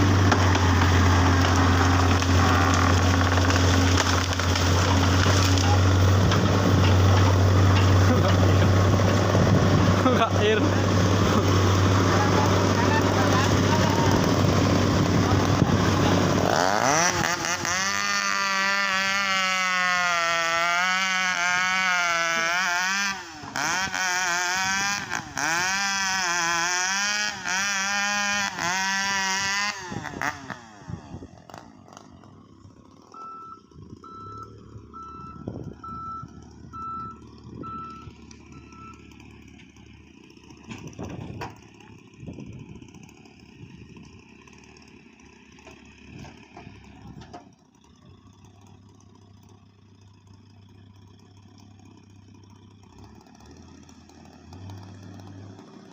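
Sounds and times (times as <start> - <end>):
engine-like drone: 0.0 - 55.9
short warning beeps: 33.2 - 39.0.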